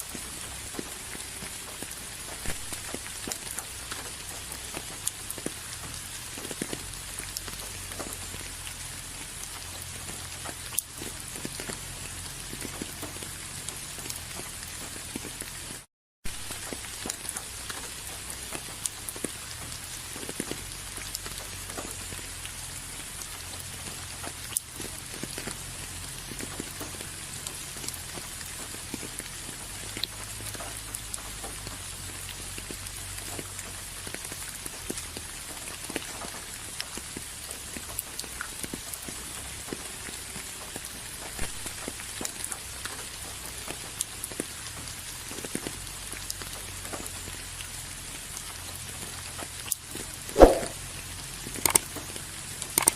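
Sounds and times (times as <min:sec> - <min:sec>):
rain drops tapping: 0:00.0 - 0:52.9.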